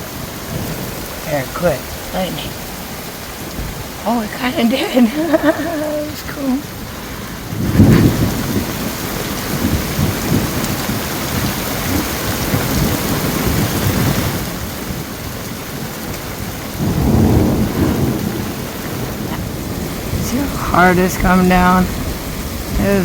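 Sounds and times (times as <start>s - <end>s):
heavy rain pouring: 0.0s - 23.0s
low thunder rumble: 0.0s - 23.0s.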